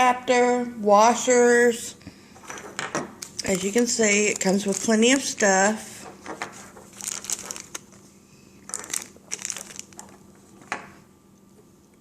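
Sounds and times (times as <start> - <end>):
plastic packaging crinkling: 3.2 - 10.6.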